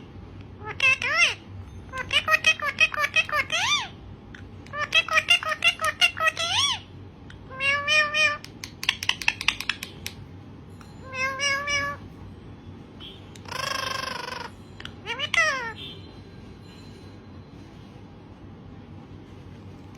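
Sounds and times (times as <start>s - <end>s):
parrot meow-like calls: 0.6s - 4.0s, 4.7s - 8.5s, 11.0s - 12.1s, 13.4s - 15.8s
parrot chattering: 0.6s - 10.2s, 11.0s - 12.1s, 13.3s - 15.8s
parrot clicking sounds: 4.3s - 6.5s, 7.2s - 10.3s, 13.3s - 15.6s.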